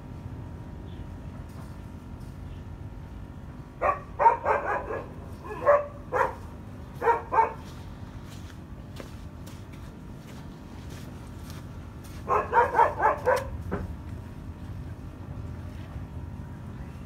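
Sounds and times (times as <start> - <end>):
low background hum: 0.0 - 17.0
dog barking: 3.8 - 7.7, 12.2 - 13.6.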